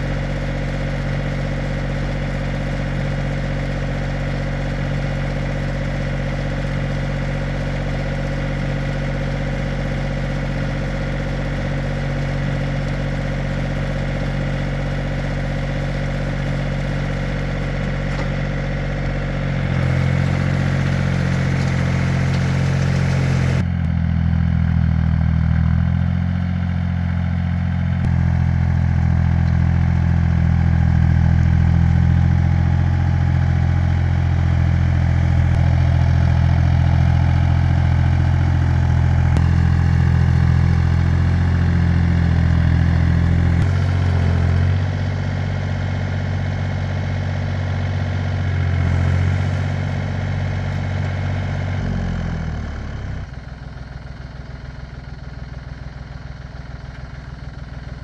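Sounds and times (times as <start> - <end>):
hand tiller engine running: 19.8 - 23.6.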